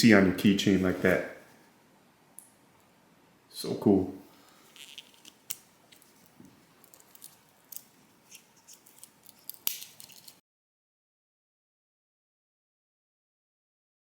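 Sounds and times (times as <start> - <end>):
small clicks and metal scrapes: 4.5 - 10.4.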